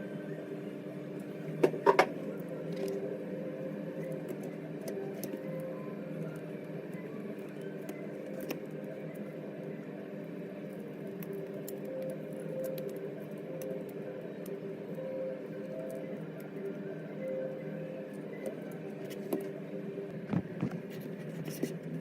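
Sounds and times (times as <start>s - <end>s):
low hum with held tones: 0.0s - 22.0s.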